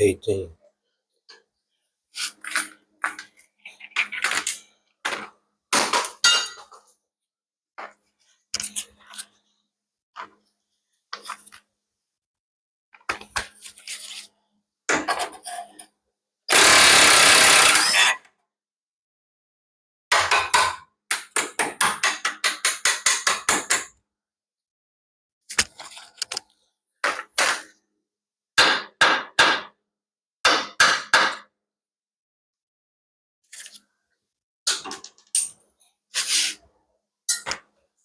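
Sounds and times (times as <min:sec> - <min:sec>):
loud steady tool burst: 0:16.5 - 0:18.1.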